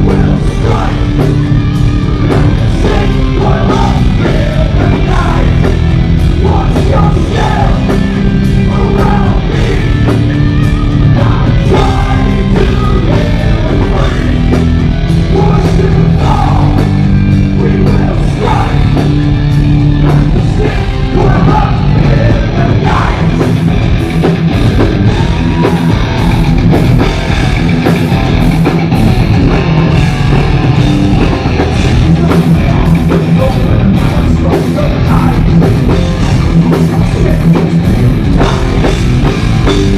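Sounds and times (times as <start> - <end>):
man singing: 0.0 - 19.1, 20.0 - 23.5, 31.5 - 39.0
heavy metal band playing: 0.0 - 39.9.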